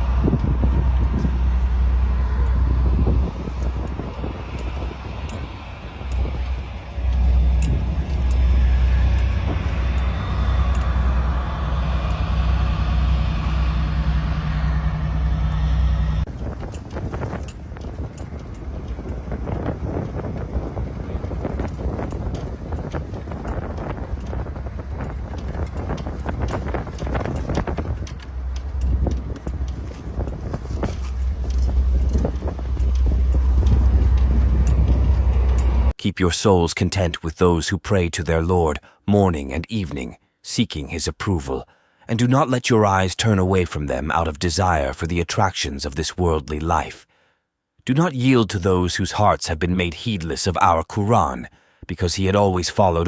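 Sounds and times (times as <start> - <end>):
vehicle running with low rumble: 0.0 - 36.0
scattered clicks and knocks: 2.4 - 14.0, 16.2 - 36.0.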